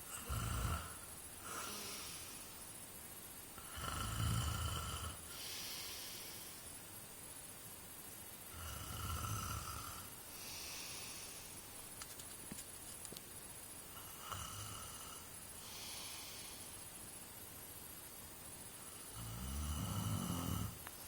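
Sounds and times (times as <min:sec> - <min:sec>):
man snoring: 0:00.1 - 0:02.1, 0:03.6 - 0:05.5, 0:08.5 - 0:10.1, 0:14.0 - 0:16.1, 0:19.0 - 0:20.8.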